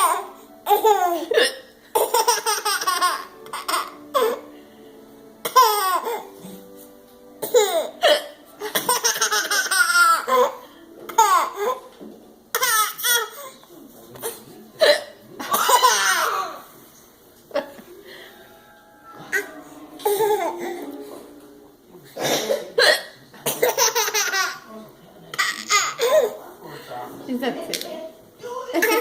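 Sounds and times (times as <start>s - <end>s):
baby laughing: 0.0s - 4.5s, 5.4s - 6.3s, 8.6s - 11.9s, 12.5s - 13.6s, 15.4s - 16.6s, 23.5s - 24.7s, 28.8s - 29.0s.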